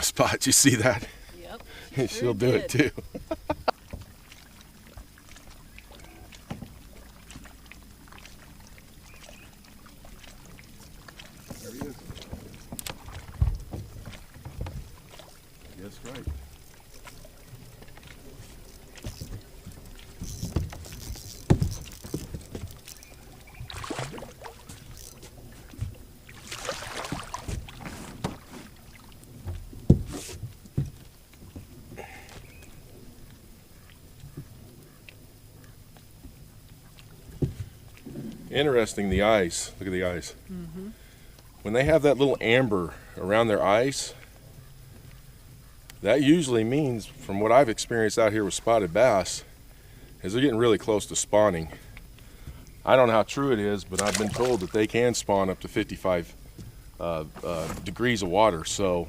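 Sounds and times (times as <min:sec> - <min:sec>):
water lapping against hull: 0:00.0 - 0:59.0
knocks and thuds on a boat: 0:11.1 - 0:15.3, 0:16.1 - 0:16.6, 0:18.4 - 0:24.8, 0:25.5 - 0:32.5, 0:37.2 - 0:38.3.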